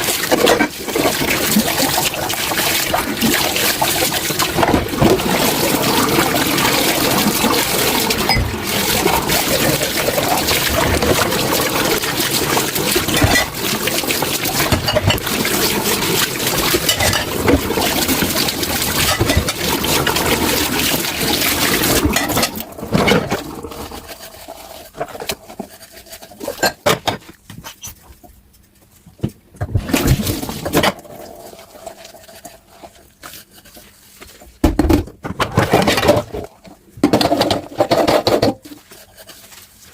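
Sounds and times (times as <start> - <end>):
tap water running into sink: 0.0 - 24.0
dishes clinking: 16.9 - 17.4.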